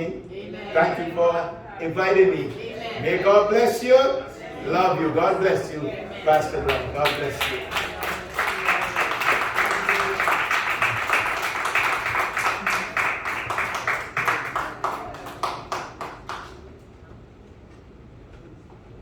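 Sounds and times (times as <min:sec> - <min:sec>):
congregation applauding: 0:06.3 - 0:16.7.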